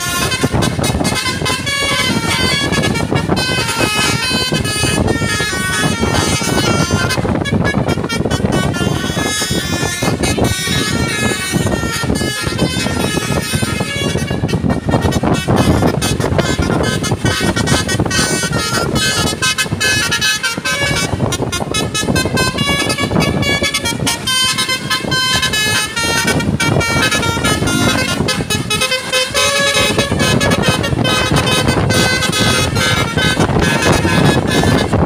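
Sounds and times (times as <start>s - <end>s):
horn playing quick tune: 0.0s - 35.0s.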